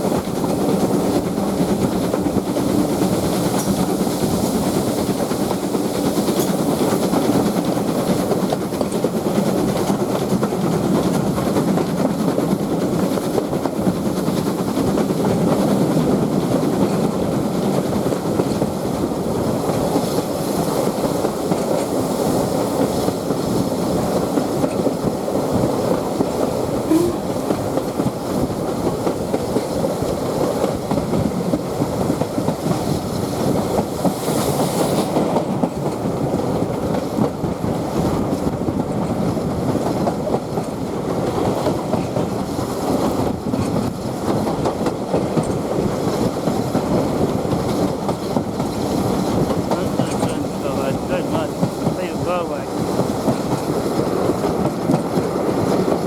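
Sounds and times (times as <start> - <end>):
train wheels rumbling on rails: 0.0 - 56.0.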